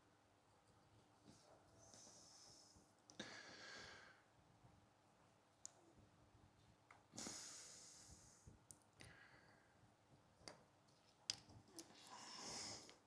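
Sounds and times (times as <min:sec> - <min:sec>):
soft breaths: 0:01.2 - 0:04.8, 0:05.8 - 0:10.2, 0:11.7 - 0:13.0.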